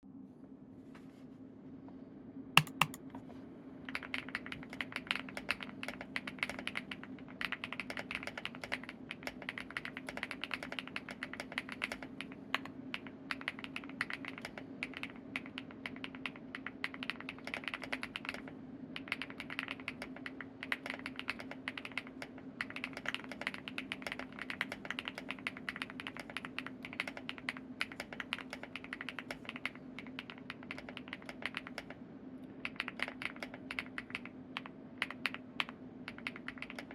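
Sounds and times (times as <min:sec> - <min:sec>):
steady low hum: 0:00.0 - 0:36.9
typing on mechanical keyboard: 0:02.6 - 0:03.0, 0:03.9 - 0:36.9.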